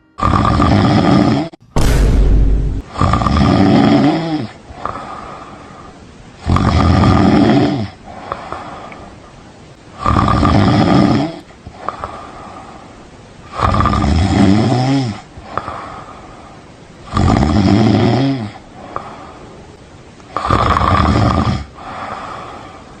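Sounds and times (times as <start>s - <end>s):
person snoring: 0.2s - 1.6s, 2.9s - 5.0s, 6.4s - 8.0s, 17.1s - 19.1s, 20.3s - 22.7s
quiet breathing: 4.4s - 6.2s, 7.8s - 9.8s, 11.3s - 13.6s, 14.9s - 17.1s, 18.3s - 20.5s, 21.6s - 23.0s.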